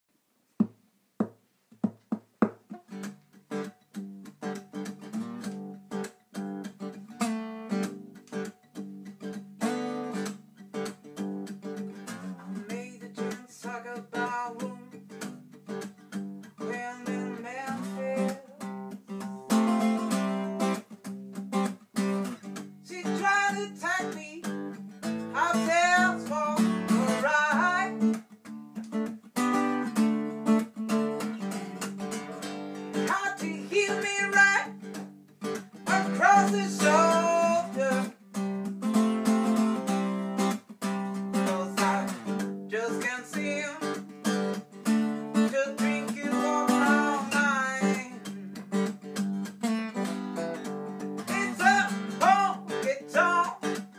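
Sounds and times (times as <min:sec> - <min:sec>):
sharp taps: 0:00.6 - 0:02.8
acoustic guitar strumming: 0:01.2 - 0:53.9
person singing sliding vocals: 0:12.2 - 0:15.0, 0:16.6 - 0:19.6, 0:22.9 - 0:24.5, 0:25.3 - 0:28.2, 0:33.0 - 0:35.0, 0:35.8 - 0:38.2, 0:41.3 - 0:44.1, 0:45.2 - 0:48.6, 0:51.2 - 0:53.8.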